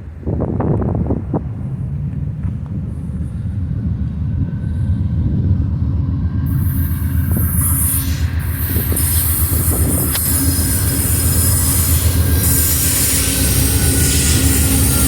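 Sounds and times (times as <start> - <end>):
diesel train rumble: 0.0 - 15.0
wheels squealing on rails: 6.1 - 15.0.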